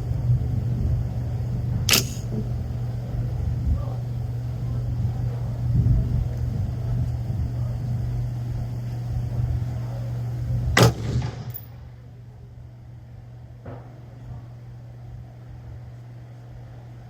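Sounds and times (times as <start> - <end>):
steady low hum: 0.0 - 17.0
rifle shot: 1.9 - 2.4, 10.8 - 11.8.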